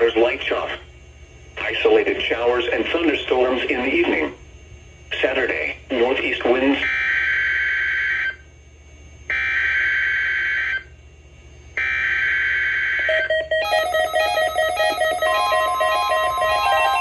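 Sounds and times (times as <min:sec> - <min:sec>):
short electronic tones stepping: 0:13.6 - 0:17.0
steady electronic tone: 0:13.6 - 0:17.0.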